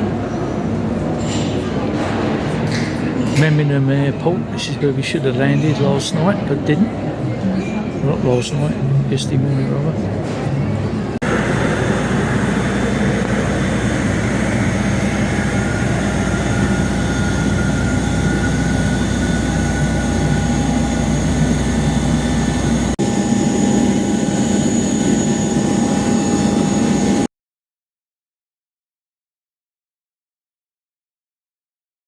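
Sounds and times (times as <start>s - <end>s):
jet engines droning: 11.0s - 27.3s
faint high whine: 11.2s - 27.3s.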